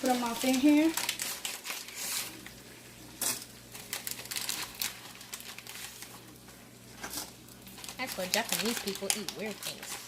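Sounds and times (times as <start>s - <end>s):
plastic packaging crinkling: 0.0s - 10.0s
dry noodles clicking: 7.1s - 10.0s.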